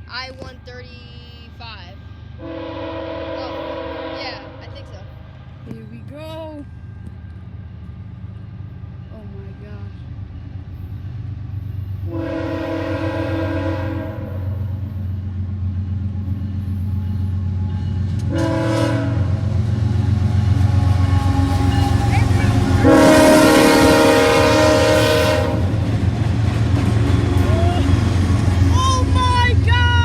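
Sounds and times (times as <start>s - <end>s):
diesel locomotive engine rumble: 0.0s - 30.0s
train air horn blasts: 2.4s - 5.0s, 12.1s - 15.1s, 17.8s - 25.8s.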